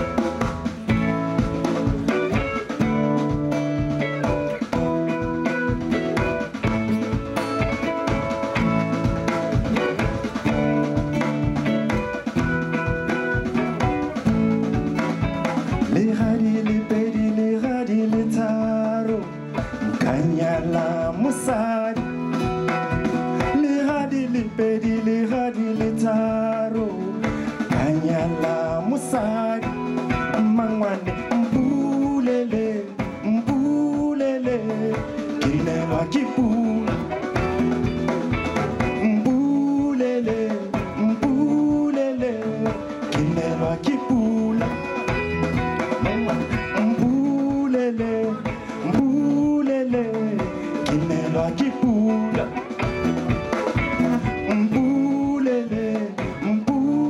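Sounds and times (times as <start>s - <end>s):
live band playing: 0.0s - 57.0s
person singing: 15.0s - 57.0s.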